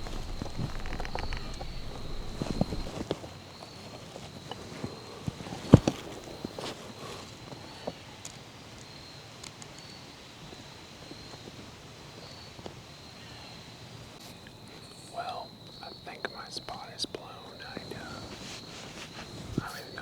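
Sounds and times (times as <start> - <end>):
high-pitched insect trill: 0.0 - 3.7
footsteps rustling in woods: 0.0 - 13.0, 17.2 - 20.0.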